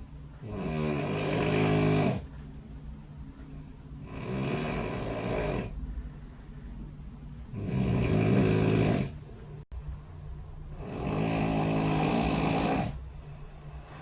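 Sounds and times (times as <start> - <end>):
low background hum: 0.0 - 14.0
person snoring: 0.4 - 2.3, 4.0 - 5.8, 7.5 - 9.2, 10.7 - 13.0.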